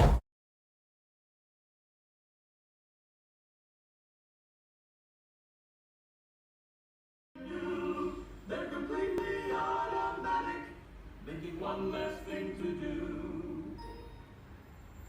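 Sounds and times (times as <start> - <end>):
voices singing held chords: 7.4 - 14.0.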